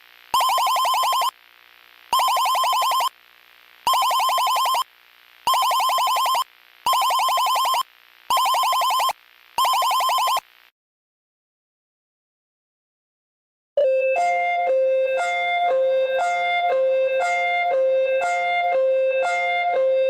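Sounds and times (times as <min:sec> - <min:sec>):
electronic alarm beeping: 0:00.4 - 0:01.3, 0:02.2 - 0:03.1, 0:03.9 - 0:04.8, 0:05.5 - 0:10.4.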